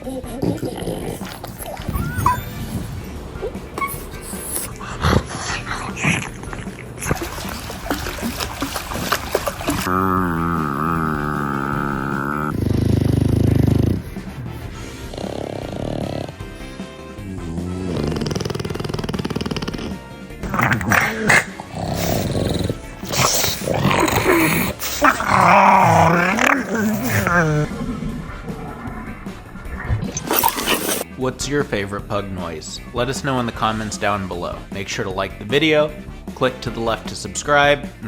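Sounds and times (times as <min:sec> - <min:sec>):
dog lapping water: 0:00.0 - 0:17.2, 0:19.6 - 0:31.1
background music: 0:00.0 - 0:38.0.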